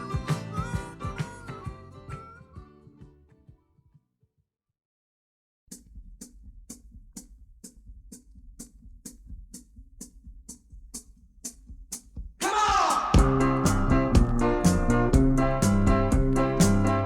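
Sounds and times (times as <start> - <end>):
full band with guitars and bass: 0.0 - 3.1, 13.2 - 17.0
soft kick drum: 5.7 - 13.4, 14.0 - 14.5, 15.1 - 16.4
hi-hat ticking: 5.7 - 16.9.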